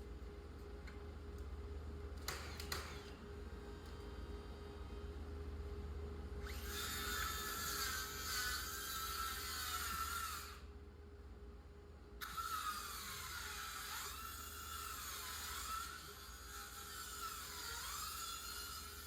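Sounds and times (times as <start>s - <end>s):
power tool whirring with high whine: 6.4s - 10.7s, 12.2s - 19.0s.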